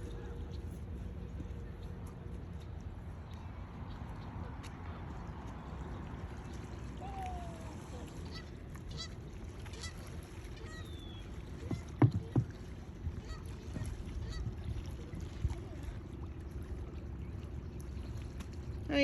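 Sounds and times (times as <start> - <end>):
steady low rumble: 0.0 - 9.6.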